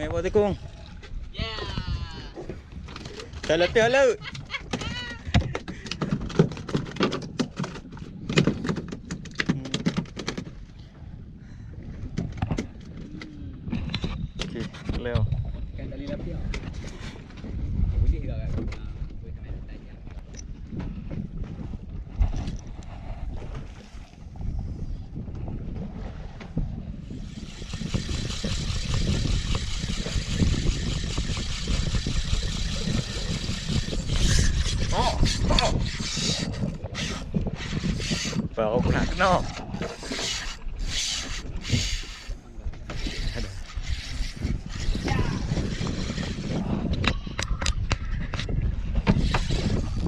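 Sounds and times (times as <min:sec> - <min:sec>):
wind and water rushing: 0:00.0 - 0:04.2, 0:20.8 - 0:50.0
boat engine running: 0:26.3 - 0:48.1.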